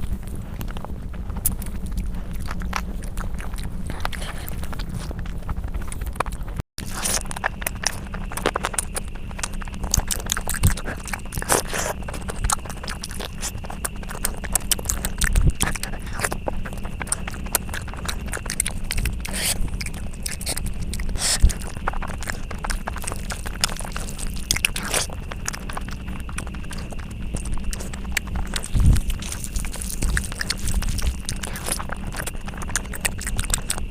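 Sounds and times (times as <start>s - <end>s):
person chewing and crunching food: 0.0s - 33.9s
steady low hum: 0.0s - 33.9s.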